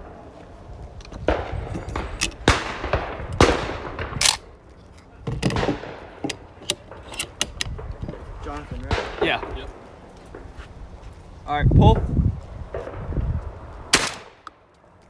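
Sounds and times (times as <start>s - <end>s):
shotgun shots echoing: 1.3s - 4.5s, 5.6s - 7.9s, 8.8s - 9.8s, 13.9s - 14.5s.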